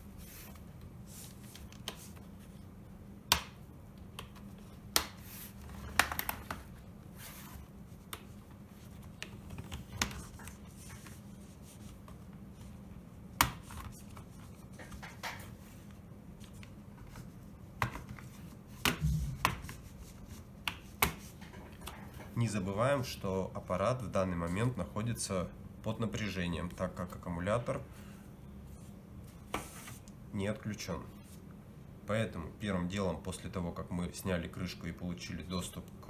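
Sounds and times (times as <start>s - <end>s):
small handling sounds: 4.0s - 22.4s.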